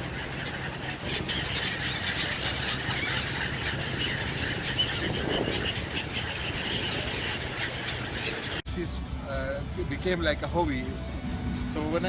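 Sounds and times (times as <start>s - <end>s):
flock of birds calling: 0.0s - 8.6s.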